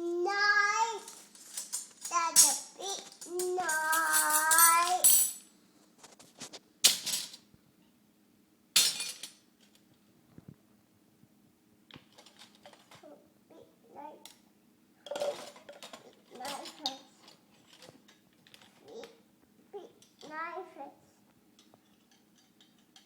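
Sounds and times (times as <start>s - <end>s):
metal spoons crashing: 1.1s - 5.4s, 8.8s - 9.4s.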